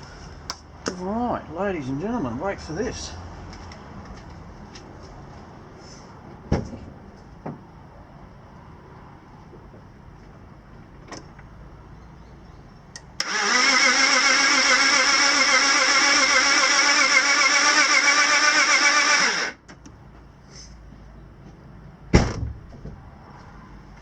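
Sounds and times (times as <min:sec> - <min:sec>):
car engine cranking on starter: 0:13.2 - 0:19.6.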